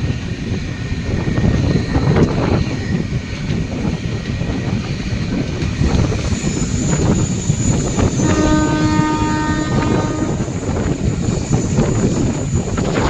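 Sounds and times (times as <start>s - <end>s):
train wheels rumbling: 0.0s - 13.0s
train horn blast: 8.2s - 10.8s.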